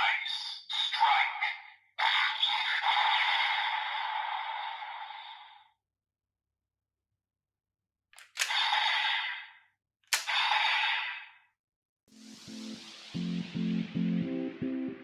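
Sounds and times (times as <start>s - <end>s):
toy belt sharp click: 8.2s - 8.8s, 10.1s - 10.6s
toy belt hissing sound effects: 8.2s - 11.3s.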